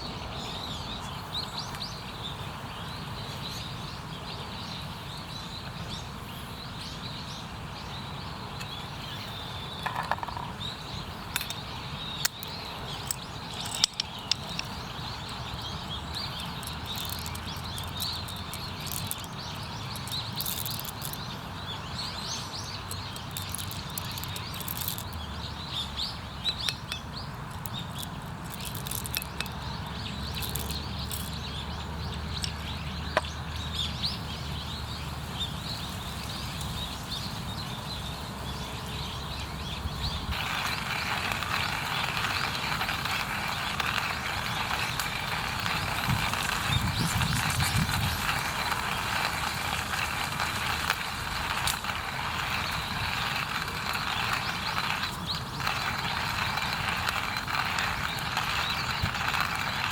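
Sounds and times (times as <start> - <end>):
small birds chirping: 0.0 - 59.9
sharp clicks: 12.2 - 21.2, 22.9 - 25.2, 40.3 - 59.9.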